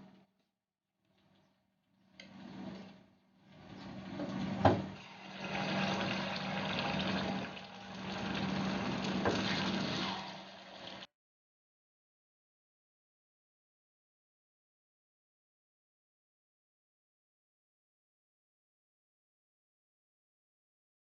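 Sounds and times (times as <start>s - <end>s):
batter sizzling in hot oil: 5.0s - 11.1s.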